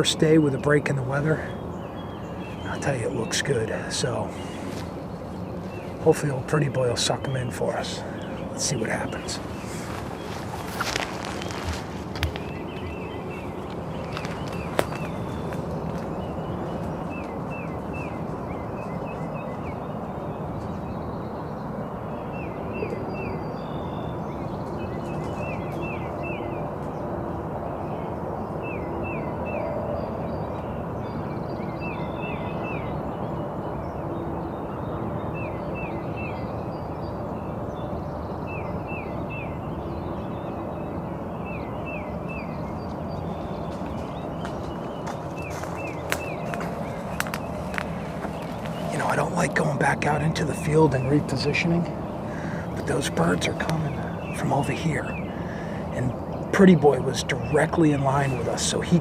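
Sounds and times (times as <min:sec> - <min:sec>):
steady rushing background: 0:42.6 - 0:49.3.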